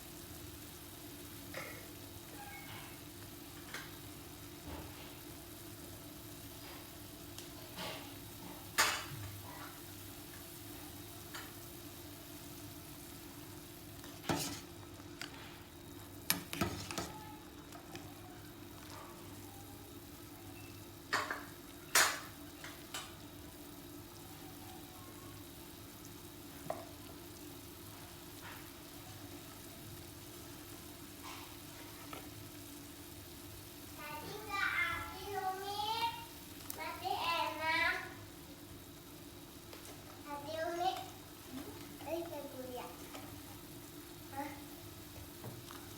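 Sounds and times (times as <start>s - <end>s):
utensil stirring food in pot: 6.1s - 23.9s, 26.0s - 34.4s.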